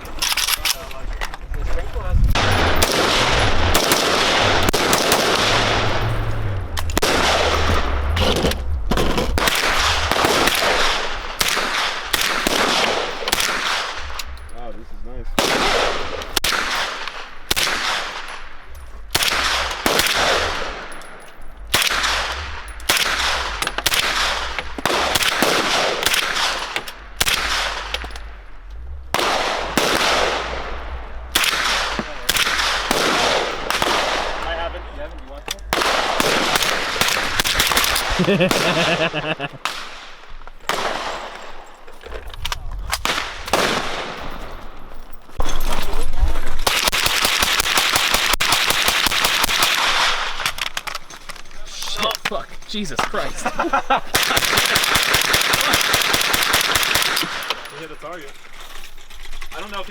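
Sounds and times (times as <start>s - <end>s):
gunshots with ringing tail: 2.3s - 41.8s, 43.0s - 44.9s, 54.1s - 58.0s.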